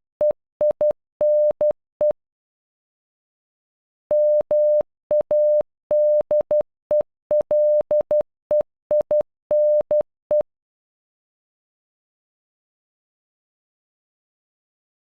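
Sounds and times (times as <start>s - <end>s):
morse code beeps: 0.2s - 2.2s, 4.1s - 10.4s.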